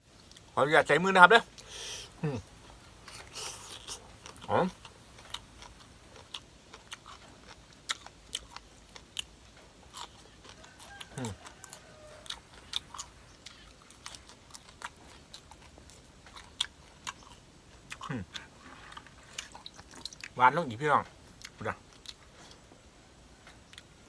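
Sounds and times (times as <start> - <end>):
chewing and crunching food: 0.0 - 24.0
person murmuring: 1.7 - 4.8, 18.1 - 18.4.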